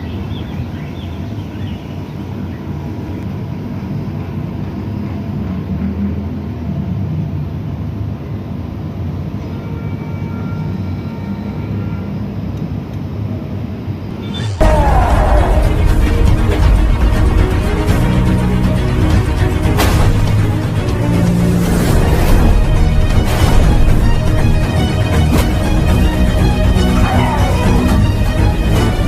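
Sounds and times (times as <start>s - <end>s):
steady low rumble: 14.6s - 29.0s.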